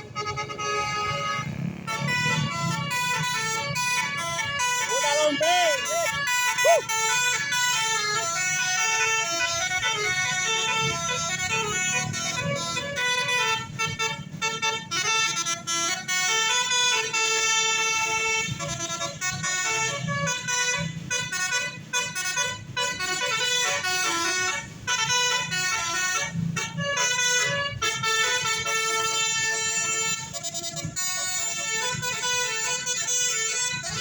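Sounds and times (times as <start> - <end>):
bus musical horn melody: 0.0 - 34.0.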